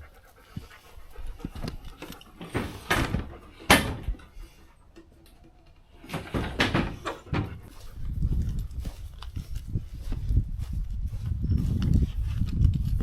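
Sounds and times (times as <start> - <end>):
scattered knocks and rustles: 1.4 - 8.8.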